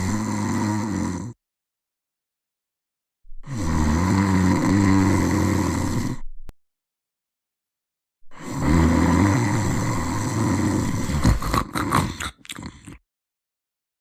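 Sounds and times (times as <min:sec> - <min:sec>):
loud snore: 0:00.0 - 0:01.4, 0:03.4 - 0:06.3, 0:08.3 - 0:13.0.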